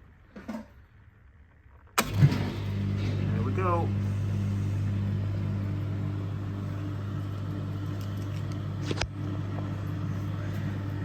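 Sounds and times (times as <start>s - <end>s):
dishwasher motor humming: 2.0s - 11.0s.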